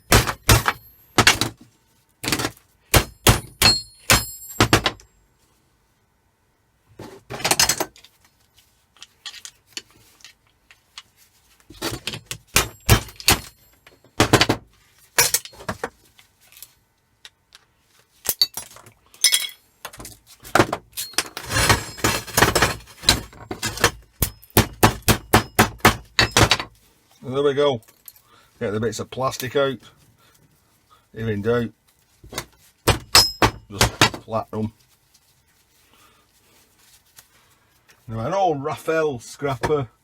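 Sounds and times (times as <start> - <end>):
metal and plastic parts clinking: 9.0 - 11.1, 11.7 - 14.5, 15.1 - 16.7, 17.5 - 24.6, 27.8 - 28.3.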